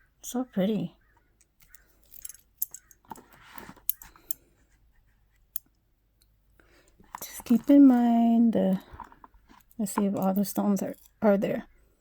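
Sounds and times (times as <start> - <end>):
jewelry metal clicks: 1.4 - 3.0, 3.8 - 4.4
soft rustles: 1.7 - 5.5.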